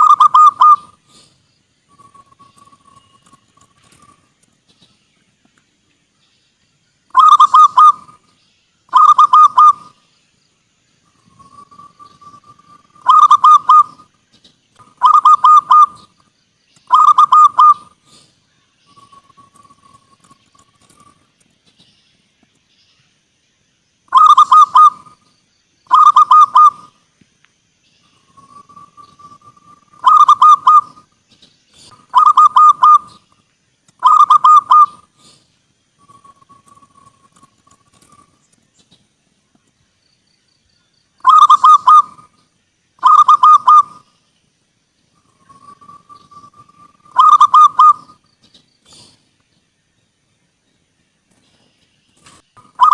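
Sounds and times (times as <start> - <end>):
dove cooing: 0.0 - 1.3, 7.1 - 8.2, 8.9 - 10.0, 11.2 - 14.1, 14.8 - 16.1, 16.9 - 18.2, 24.1 - 25.2, 25.9 - 27.0, 28.3 - 31.1, 31.8 - 33.2, 34.0 - 35.4, 41.2 - 42.3, 43.0 - 44.0, 45.2 - 48.2, 52.6 - 52.9.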